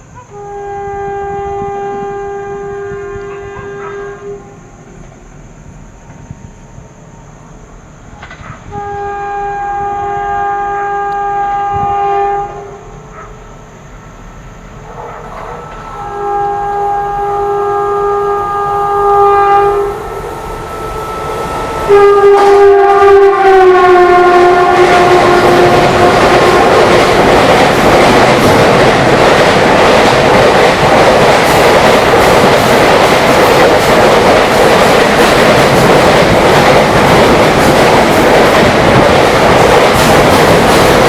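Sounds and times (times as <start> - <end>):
locomotive horn blasts: 0.2 - 5.0, 8.7 - 12.9, 15.5 - 27.0.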